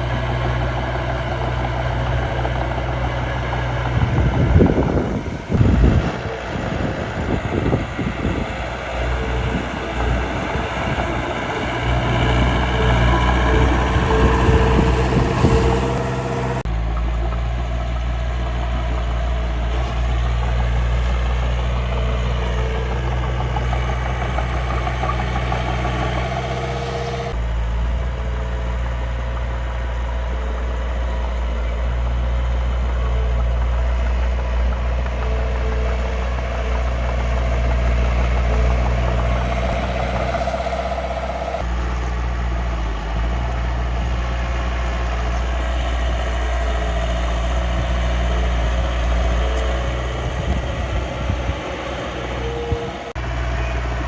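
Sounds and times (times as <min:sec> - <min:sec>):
small engine idling: 0:00.0 - 0:54.0.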